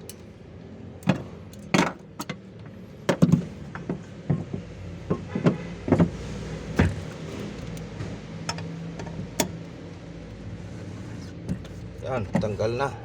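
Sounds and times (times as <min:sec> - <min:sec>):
metal tools knocking on metal: 0:06.9 - 0:09.7.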